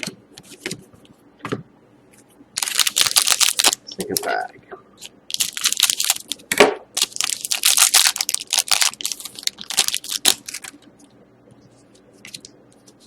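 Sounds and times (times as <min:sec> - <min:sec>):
wrapper tearing and crinkling: 0:02.6 - 0:03.8, 0:05.3 - 0:06.4, 0:07.0 - 0:10.8.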